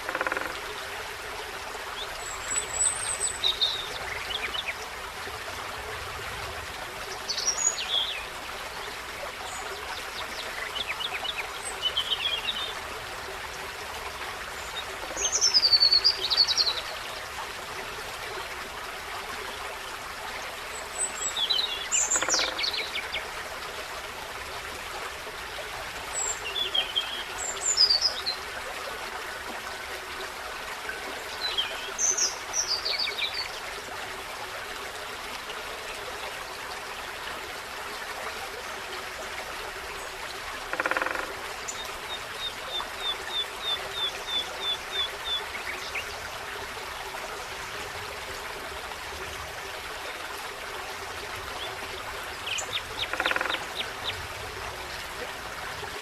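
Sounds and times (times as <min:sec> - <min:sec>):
forest stream rushing: 0:00.0 - 0:56.0
songbirds singing: 0:20.9 - 0:23.2, 0:51.6 - 0:54.3.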